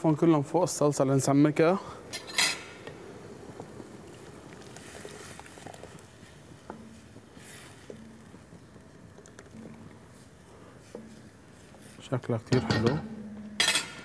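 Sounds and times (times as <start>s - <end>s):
soft hisses: 0.6s - 12.6s
sauce simmering in a pot: 1.3s - 12.5s.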